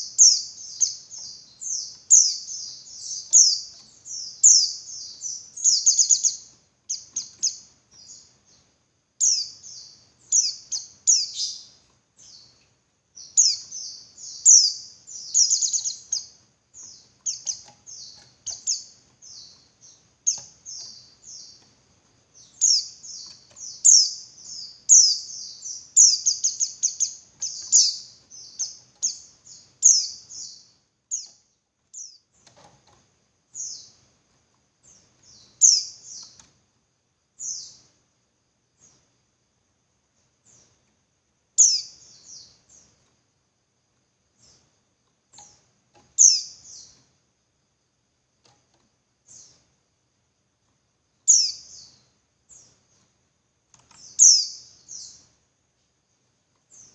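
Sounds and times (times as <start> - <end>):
white-eye bird chirping: 0.0 - 8.6, 9.2 - 12.6, 13.2 - 21.7, 22.4 - 32.7, 33.5 - 34.0, 34.9 - 36.5, 41.6 - 42.9, 45.4 - 47.0, 51.3 - 52.8, 53.9 - 55.3.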